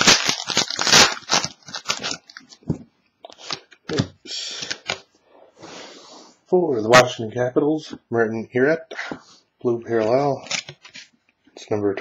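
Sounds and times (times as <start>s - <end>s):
card rustle: 9.9s - 11.2s.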